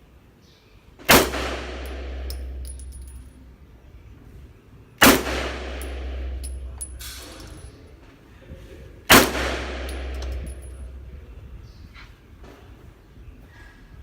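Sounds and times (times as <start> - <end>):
pistol shots echoing: 1.1 - 3.2, 5.0 - 7.7, 9.1 - 11.0
brass casings clinking: 1.1 - 4.0, 5.0 - 8.0, 9.1 - 11.4.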